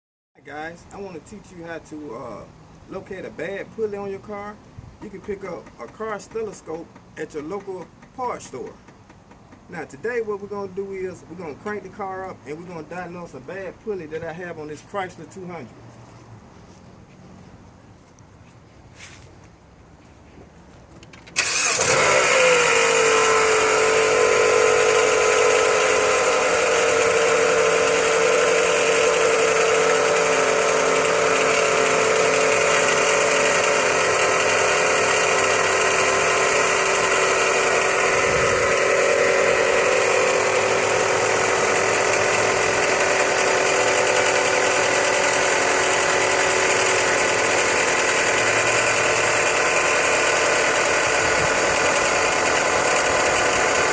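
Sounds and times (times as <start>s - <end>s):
car engine starting and idling: 21.0s - 53.9s
pulley whine: 21.3s - 53.9s.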